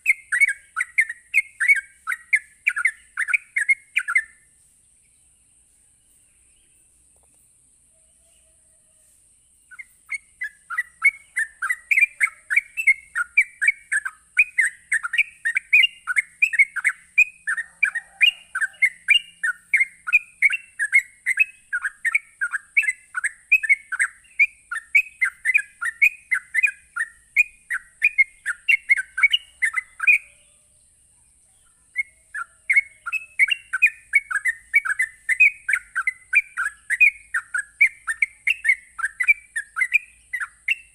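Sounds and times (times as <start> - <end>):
bird chirping rapid chatter: 0.0 - 4.8, 9.5 - 30.4, 31.6 - 40.9
faint high hiss: 0.0 - 13.7.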